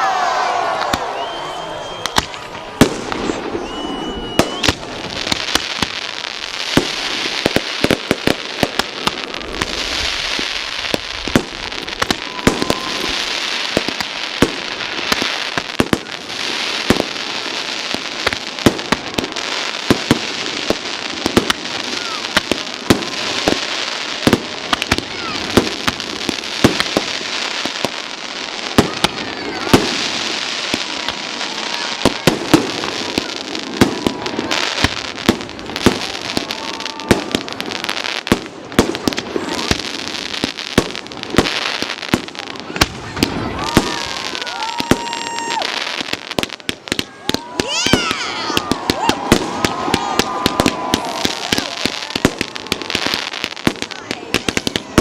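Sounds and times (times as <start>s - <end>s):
fireworks bangs: 0.0s - 55.0s
fireworks crackling: 0.0s - 55.0s.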